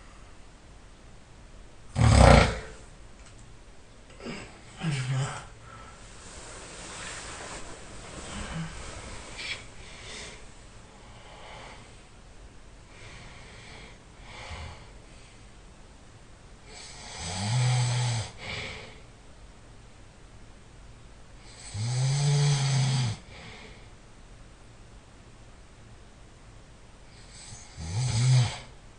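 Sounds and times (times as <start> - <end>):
man snoring: 2.0 - 2.8, 16.7 - 18.6, 21.5 - 23.3, 27.2 - 28.7
faint breaths: 4.1 - 12.2, 12.8 - 15.7, 18.3 - 19.1, 23.2 - 24.0.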